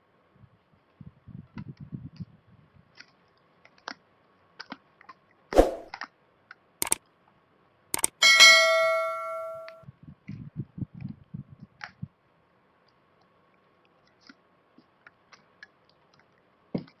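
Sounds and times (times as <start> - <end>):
light clicks: 8.0 - 8.2
ringing metallic clink: 8.2 - 9.8.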